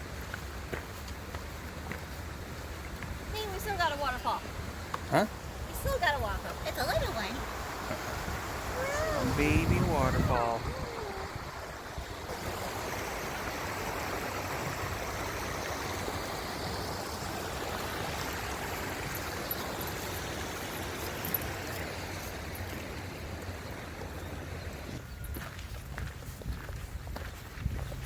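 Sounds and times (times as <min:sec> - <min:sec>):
waterfall water pouring and splashing: 0:07.0 - 0:23.8.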